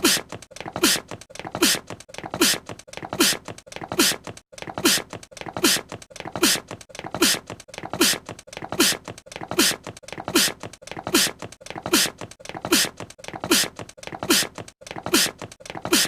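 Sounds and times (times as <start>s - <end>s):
small cute voiced sneeze: 3.2s - 3.4s, 5.6s - 6.6s, 8.0s - 8.2s, 9.6s - 16.0s.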